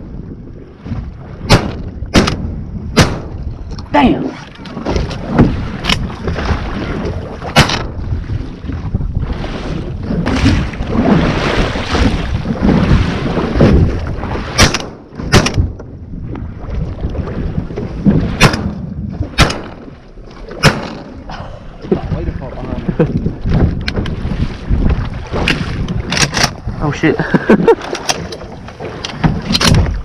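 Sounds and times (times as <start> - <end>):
wind buffeting microphone: 0.0 - 30.0
sharp loud bangs: 1.5 - 3.4, 7.5 - 8.0, 20.6 - 21.1.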